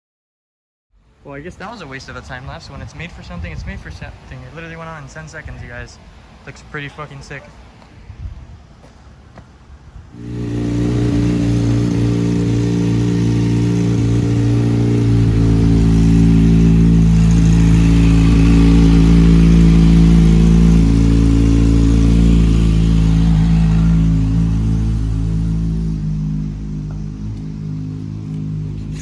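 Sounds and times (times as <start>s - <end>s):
motorcycle engine idling: 10.2s - 29.0s.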